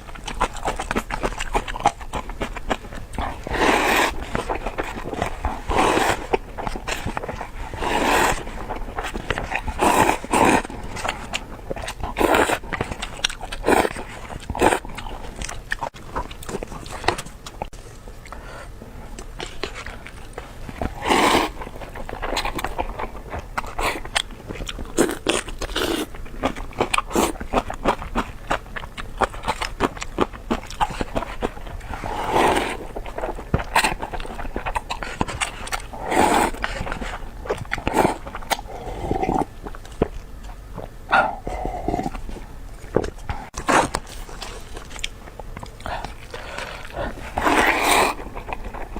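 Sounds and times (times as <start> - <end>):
wet chewing and smacking: 0.0 - 18.4, 19.1 - 48.9.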